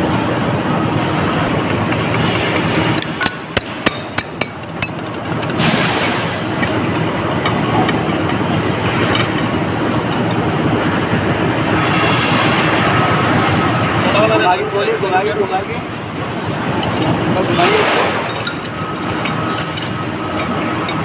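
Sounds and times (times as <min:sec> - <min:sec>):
metal tools clicking and tapping: 0:01.6 - 0:11.7, 0:15.7 - 0:21.0.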